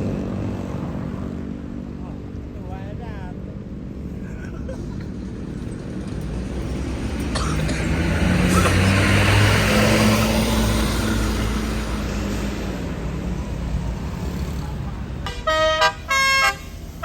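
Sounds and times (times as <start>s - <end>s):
bus diesel engine driving past: 3.9s - 17.0s.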